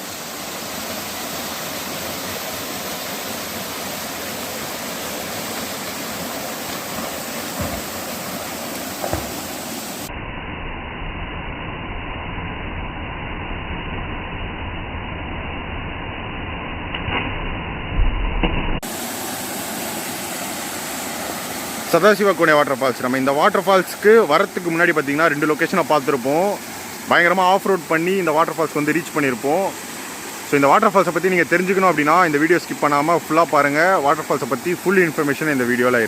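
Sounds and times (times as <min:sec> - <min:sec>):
waterfall rushing: 0:00.0 - 0:10.1, 0:18.8 - 0:36.0
knocks: 0:07.0 - 0:08.0, 0:09.0 - 0:09.4.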